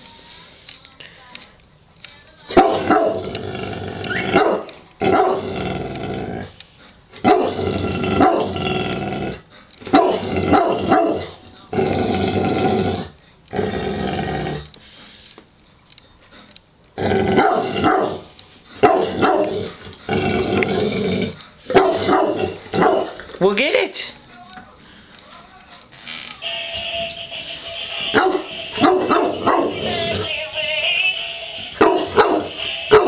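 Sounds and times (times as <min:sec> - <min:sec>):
dog barking: 0:02.5 - 0:03.2, 0:04.4 - 0:05.4, 0:07.3 - 0:07.6, 0:09.9 - 0:11.3, 0:17.4 - 0:18.2, 0:18.8 - 0:19.6, 0:21.7 - 0:23.2, 0:28.2 - 0:29.8, 0:31.8 - 0:33.0
dog growling: 0:02.8 - 0:04.4, 0:05.0 - 0:06.6, 0:07.4 - 0:14.8, 0:17.0 - 0:18.2, 0:18.8 - 0:23.4, 0:28.8 - 0:30.3.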